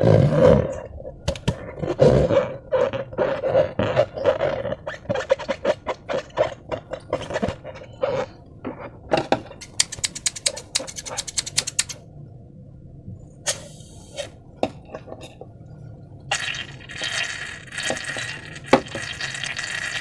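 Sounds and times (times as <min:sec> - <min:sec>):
sharp clicking pops: 0:09.6 - 0:12.0.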